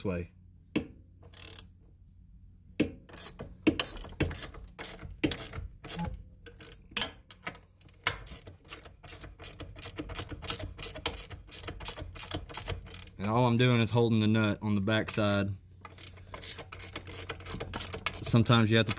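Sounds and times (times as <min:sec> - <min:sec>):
ratcheting wrench clicking: 0:01.2 - 0:01.7, 0:03.1 - 0:13.3, 0:15.8 - 0:18.9.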